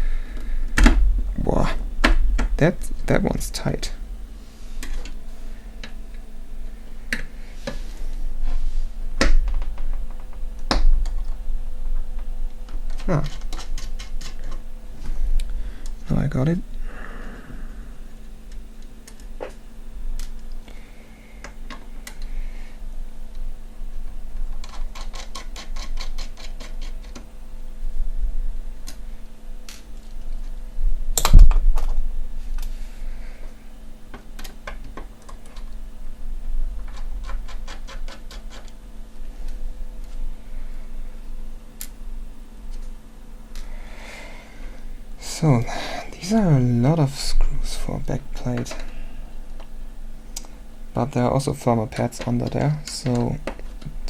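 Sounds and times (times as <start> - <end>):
screwdriver clicking on screw: 24.6 - 27.2.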